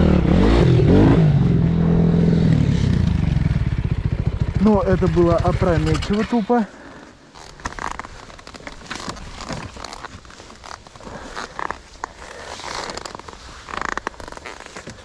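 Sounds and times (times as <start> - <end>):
dry leaves and twigs crackling: 7.3 - 15.0.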